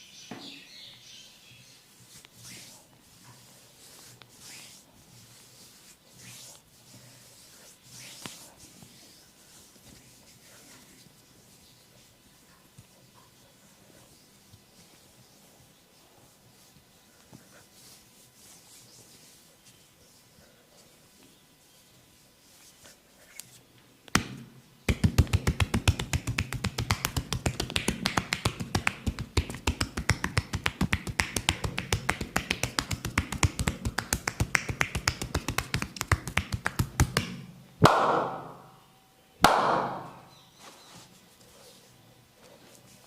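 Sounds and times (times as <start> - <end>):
loud slaps: 24.1 - 38.7, 39.4 - 40.2
rapid tapping on body: 24.2 - 38.5.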